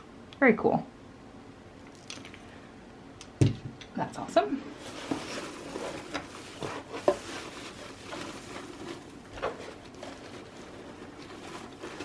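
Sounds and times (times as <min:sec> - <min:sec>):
packaging rustling: 0:04.7 - 0:12.0.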